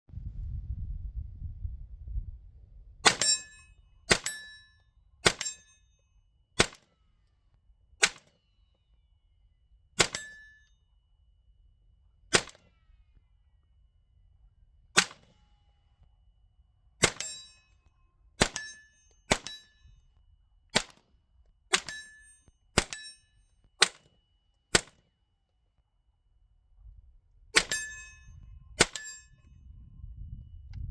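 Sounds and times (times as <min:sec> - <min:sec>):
rifle single shots: 0:03.0 - 0:03.5, 0:04.1 - 0:04.4, 0:05.2 - 0:05.6, 0:06.6 - 0:06.8, 0:08.0 - 0:08.3, 0:10.0 - 0:10.3, 0:12.3 - 0:12.7, 0:15.0 - 0:15.4, 0:17.0 - 0:17.4, 0:18.4 - 0:18.7, 0:19.3 - 0:19.6, 0:20.8 - 0:21.0, 0:23.8 - 0:24.1, 0:24.7 - 0:25.0, 0:27.6 - 0:28.0
short metallic ring: 0:03.0 - 0:07.2, 0:10.0 - 0:11.0, 0:17.0 - 0:20.1, 0:21.7 - 0:25.0, 0:27.6 - 0:30.7.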